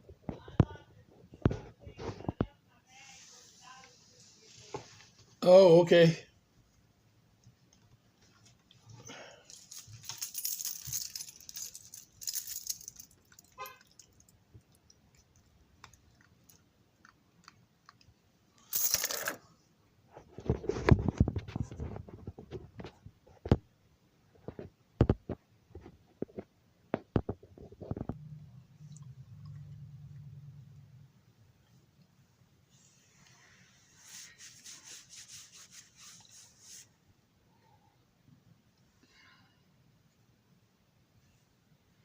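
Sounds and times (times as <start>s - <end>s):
rustling and crinkling: 20.1s - 23.7s, 32.7s - 37.0s.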